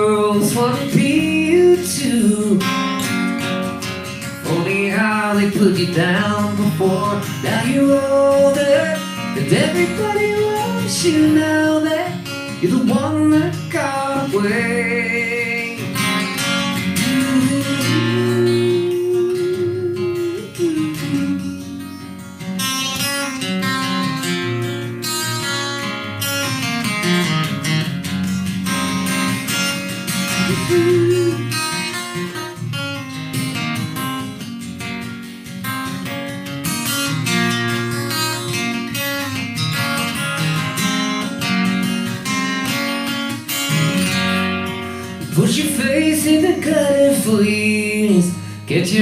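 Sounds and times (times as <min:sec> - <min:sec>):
person singing: 0:00.0 - 0:03.0, 0:04.4 - 0:21.9, 0:30.2 - 0:32.0, 0:44.8 - 0:49.0
acoustic guitar strumming and picking: 0:00.0 - 0:49.0.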